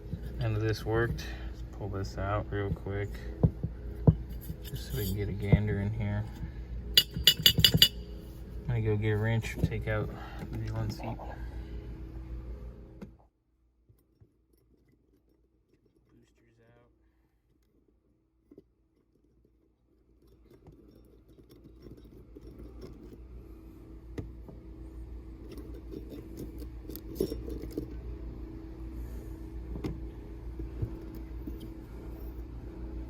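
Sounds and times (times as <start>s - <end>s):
low steady hum: 0.0s - 33.0s
metal parts and wrench clinking: 4.3s - 5.4s, 7.0s - 8.1s.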